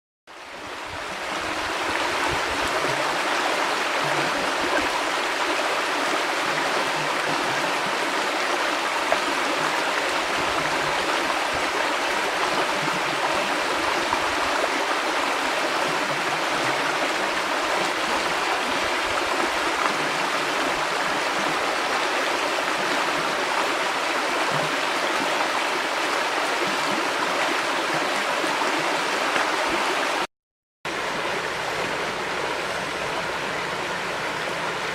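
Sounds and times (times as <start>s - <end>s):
river water flowing: 0.3s - 30.3s, 30.9s - 34.9s.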